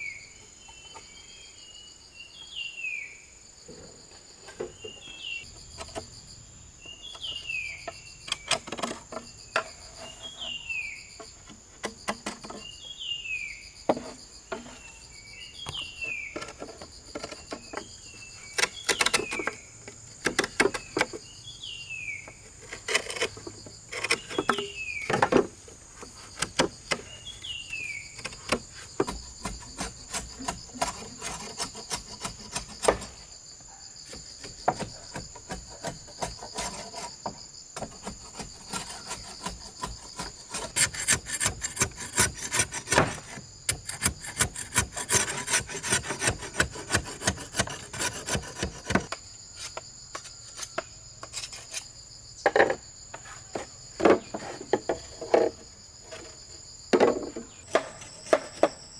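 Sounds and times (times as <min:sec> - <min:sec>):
insect chorus: 0:00.0 - 0:58.9
hand tool rasping on wood: 0:28.1 - 0:33.3, 0:34.1 - 0:49.1.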